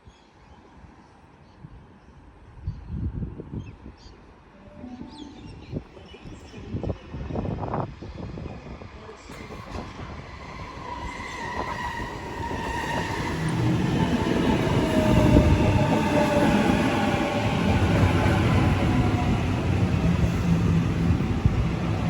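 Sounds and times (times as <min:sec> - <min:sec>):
electric train rumble and whine: 0:04.6 - 0:22.0.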